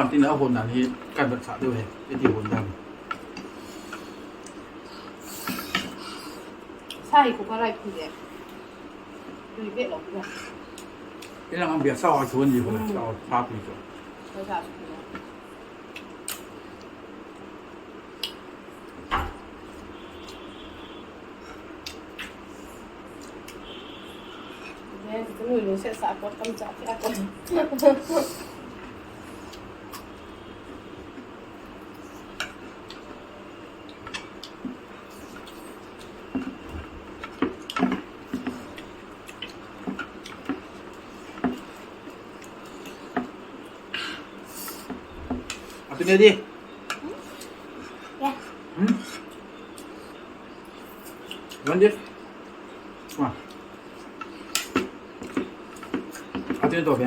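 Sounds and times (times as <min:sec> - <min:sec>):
low background hum: 0:00.0 - 0:57.0.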